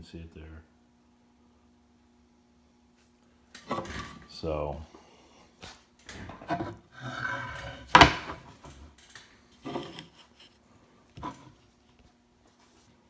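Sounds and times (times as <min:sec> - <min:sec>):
wood scraping: 0:06.2 - 0:08.9, 0:09.6 - 0:10.6, 0:11.2 - 0:11.9
wooden knocks: 0:07.9 - 0:08.5.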